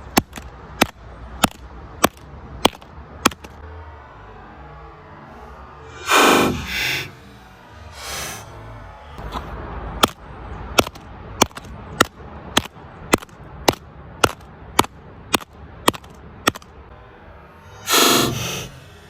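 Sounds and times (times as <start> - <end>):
hammer striking phone: 10.8 - 16.6.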